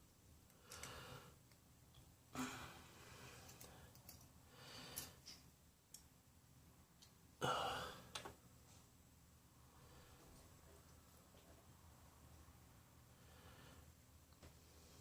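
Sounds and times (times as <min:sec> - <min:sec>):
faint breaths: 0:00.5 - 0:01.5, 0:02.3 - 0:05.4, 0:09.6 - 0:10.9, 0:12.9 - 0:15.0
small parts clicking: 0:00.5 - 0:02.1, 0:03.5 - 0:04.3.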